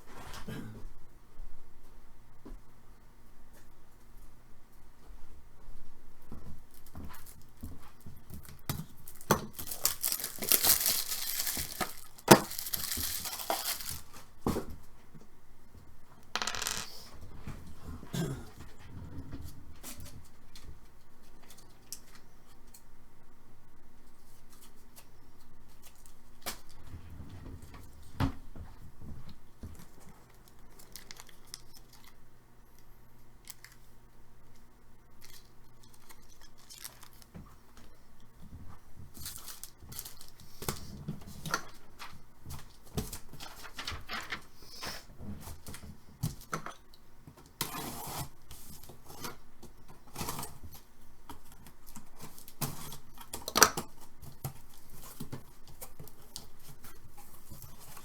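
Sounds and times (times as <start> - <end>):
wrappers and cardboard tearing: 9.0 - 14.2, 36.5 - 37.3, 39.2 - 40.8.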